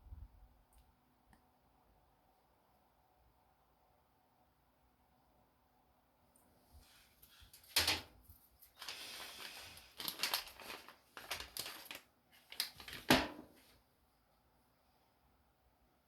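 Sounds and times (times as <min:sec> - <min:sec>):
rustling or scraping: 0:06.8 - 0:13.8.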